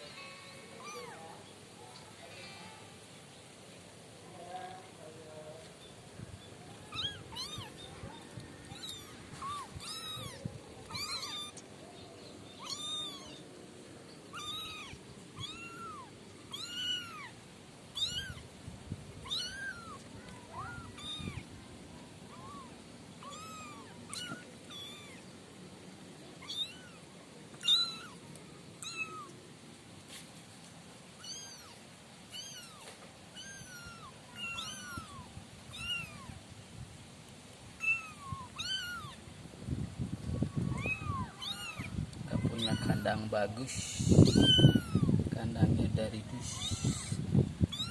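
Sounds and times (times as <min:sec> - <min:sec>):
kittens mewing: 0:00.0 - 0:01.4, 0:06.8 - 0:11.8, 0:12.6 - 0:13.6, 0:14.2 - 0:18.5, 0:19.1 - 0:25.3, 0:26.3 - 0:29.4, 0:31.2 - 0:36.4, 0:37.8 - 0:39.2, 0:40.4 - 0:45.2, 0:46.3 - 0:47.9.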